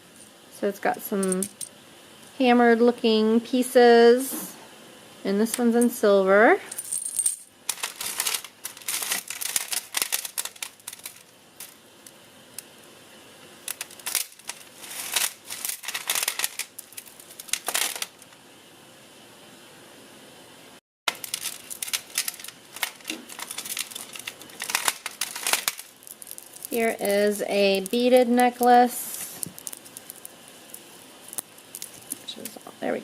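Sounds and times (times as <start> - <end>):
jewelry chains and beads clinking: 1.1 - 1.7, 6.7 - 11.8, 13.7 - 18.1, 21.1 - 32.5.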